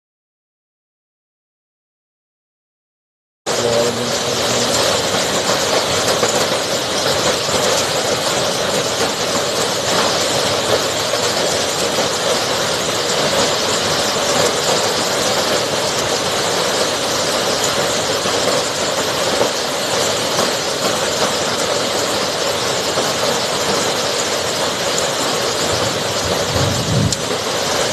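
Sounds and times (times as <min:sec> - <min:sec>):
hailstones falling: 0:04.2 - 0:27.9.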